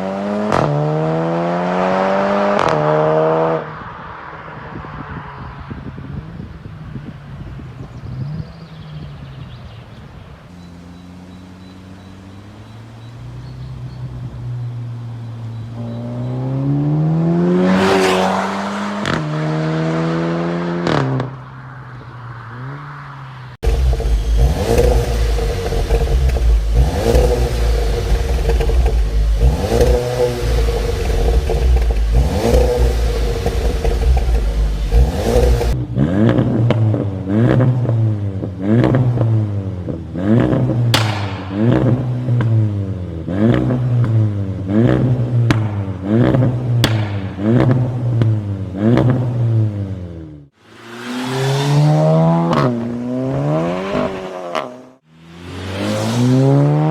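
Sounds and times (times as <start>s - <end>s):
car engine revving: 0.0s - 4.6s, 10.6s - 56.9s
exhaust cracks: 23.6s - 49.6s.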